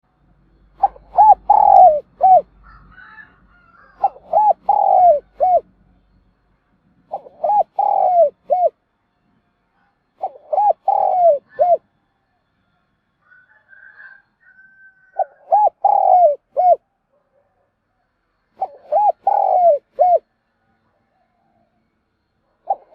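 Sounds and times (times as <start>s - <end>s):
dove cooing: 0.7s - 5.7s, 7.1s - 8.8s, 10.2s - 11.8s, 15.1s - 16.8s, 18.6s - 20.3s, 22.6s - 22.9s.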